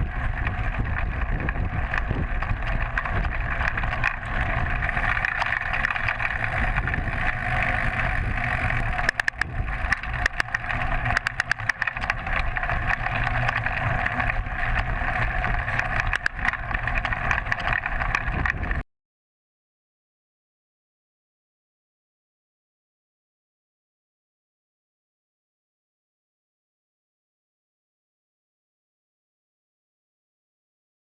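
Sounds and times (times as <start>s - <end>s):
bike clicks and knocks: 0.0s - 18.8s
muffled wind and road rumble: 0.0s - 18.8s.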